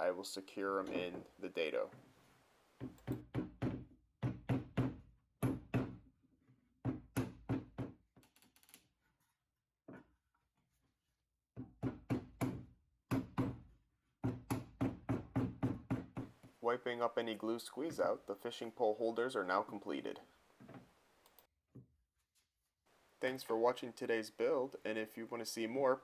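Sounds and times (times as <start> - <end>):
rubber mallet knocking wood: 2.8 - 6.0, 6.8 - 8.0, 11.6 - 16.4.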